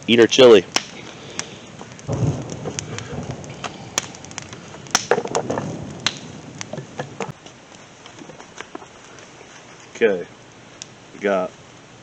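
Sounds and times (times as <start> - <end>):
campfire crackling and popping: 0.0 - 12.0
wood snapping: 0.6 - 9.2.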